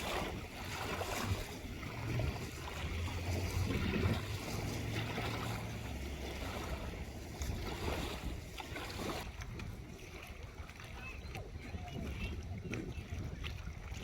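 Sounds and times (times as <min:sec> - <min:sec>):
low motor hum: 0:00.0 - 0:09.8
wind on microphone: 0:00.0 - 0:14.0.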